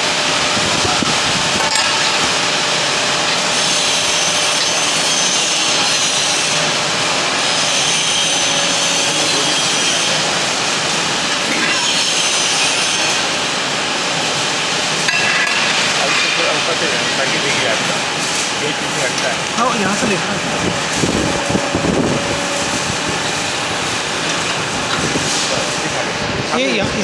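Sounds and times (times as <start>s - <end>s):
loud mechanical machine noise: 0.0s - 27.0s
high whine: 19.5s - 26.9s.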